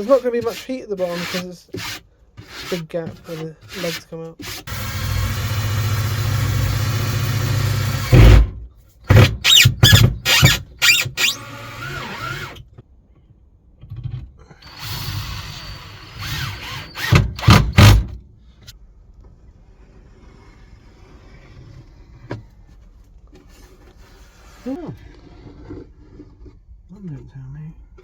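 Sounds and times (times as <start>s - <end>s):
power tool running: 4.4s - 12.6s, 14.6s - 18.1s.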